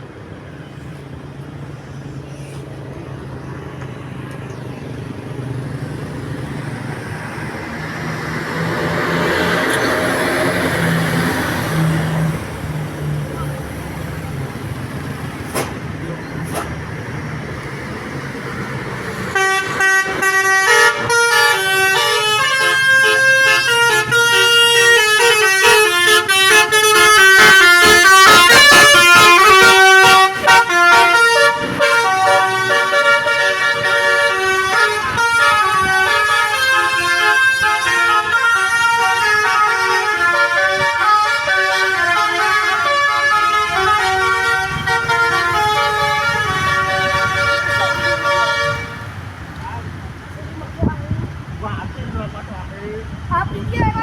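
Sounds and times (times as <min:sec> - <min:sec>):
musical bus horn melody: 0:19.1 - 0:49.2.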